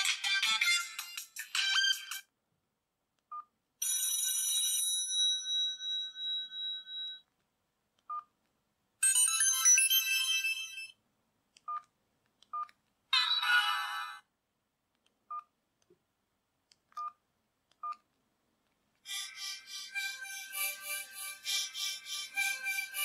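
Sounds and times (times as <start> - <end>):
phone ringtone samples: 9.0 - 11.0.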